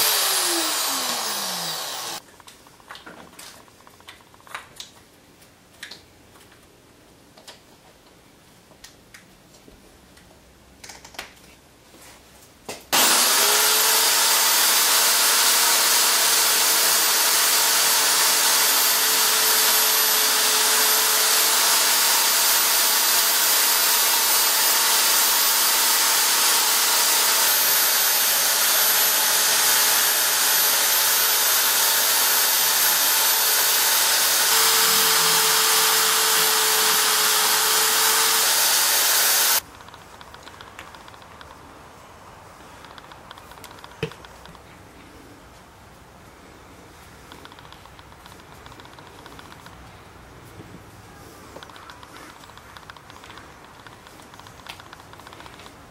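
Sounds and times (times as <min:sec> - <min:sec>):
power tool motor running: 0:00.0 - 0:02.2, 0:13.0 - 0:39.6.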